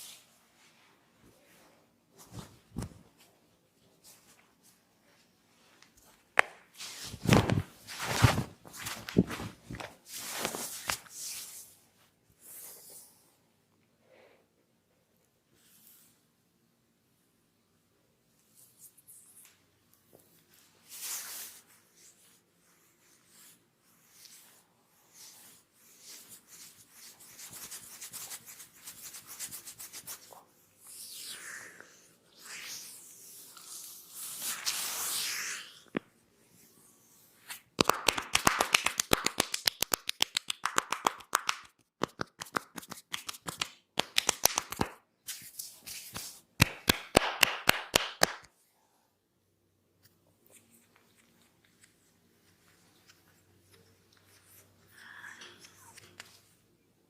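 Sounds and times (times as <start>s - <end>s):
hands rubbing over hair: 6.8s - 11.7s, 25.2s - 31.2s, 37.5s - 48.4s.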